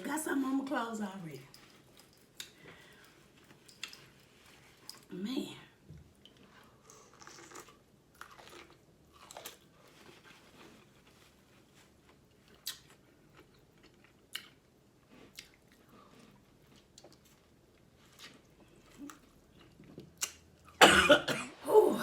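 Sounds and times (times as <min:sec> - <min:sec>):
chewing corn on the cob: 0:06.2 - 0:20.8.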